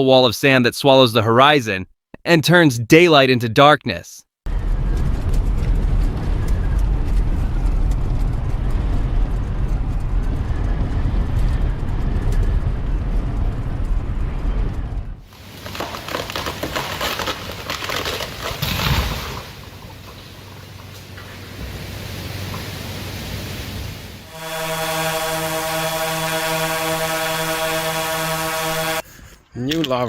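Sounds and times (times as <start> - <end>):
wind buffeting microphone: 4.5 - 15.6
crackling hiss: 15.2 - 27.2.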